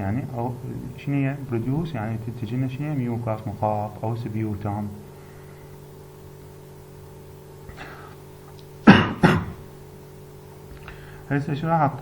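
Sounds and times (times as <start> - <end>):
low electrical hum: 0.0 - 12.0
person coughing: 7.7 - 8.1, 8.8 - 9.7.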